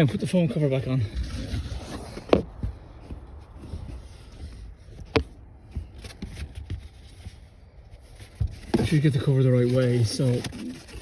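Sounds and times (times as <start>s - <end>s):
foam rubbing and scraping: 0.0s - 11.0s.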